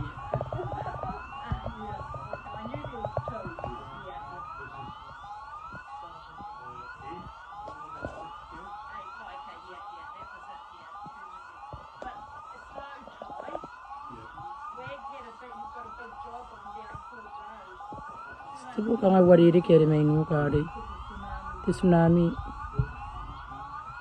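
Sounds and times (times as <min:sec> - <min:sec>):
rumble: 0:00.0 - 0:05.7, 0:20.2 - 0:24.0
whooping warning siren: 0:00.0 - 0:24.0.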